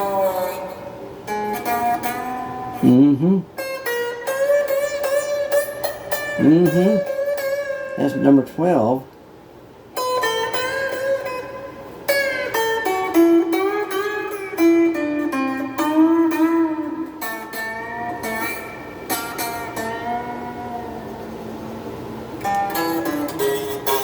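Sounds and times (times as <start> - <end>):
electric guitar lead line: 0.0 - 24.0.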